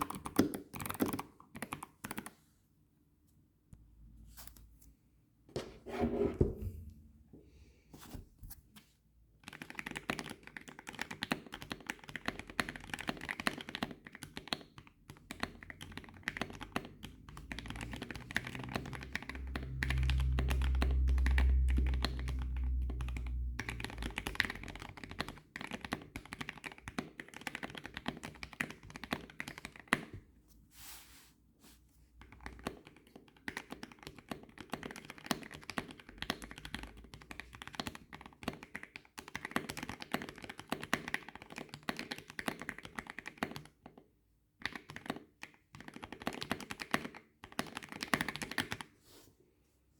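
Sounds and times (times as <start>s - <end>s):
typing on mechanical keyboard: 0.0s - 2.4s, 9.4s - 30.1s, 32.2s - 44.0s, 44.6s - 48.9s.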